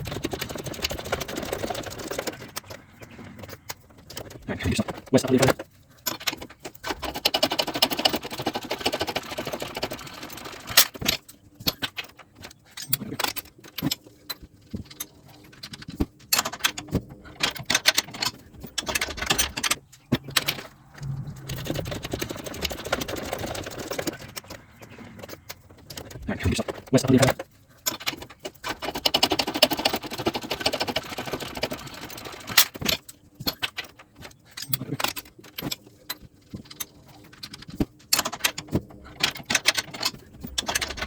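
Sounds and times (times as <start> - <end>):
metal tools clinking: 38.1 - 41.0.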